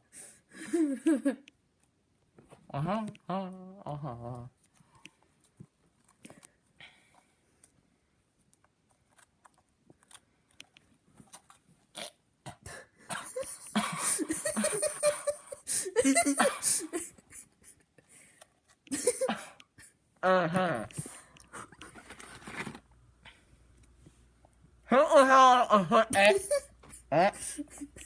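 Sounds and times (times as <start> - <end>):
wheezy laughter: 13.1 - 18.1, 18.9 - 19.9, 26.3 - 28.0.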